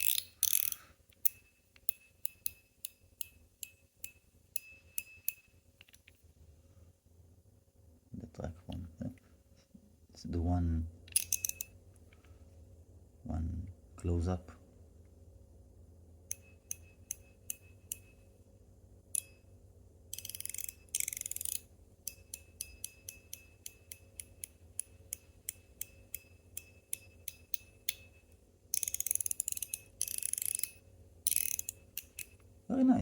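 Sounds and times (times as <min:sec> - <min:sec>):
fidget slider metal clicks: 0:00.0 - 0:06.1, 0:11.1 - 0:11.7, 0:20.1 - 0:28.1, 0:28.7 - 0:32.5.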